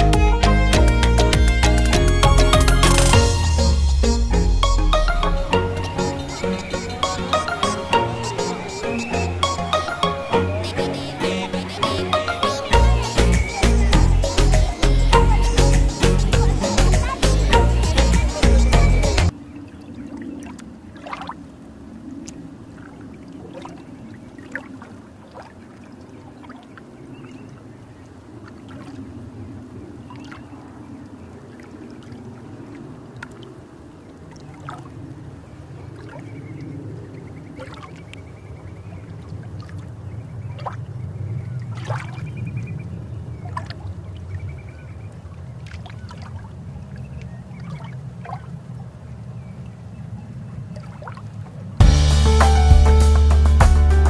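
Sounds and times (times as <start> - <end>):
water rushing over weir: 0.0 - 36.9
small splashes and clicks: 19.9 - 21.4, 22.2 - 27.6, 28.3 - 29.1, 30.1 - 35.1, 37.6 - 38.3, 39.2 - 40.9, 41.6 - 42.7, 43.4 - 44.4, 45.5 - 48.6, 50.8 - 51.5.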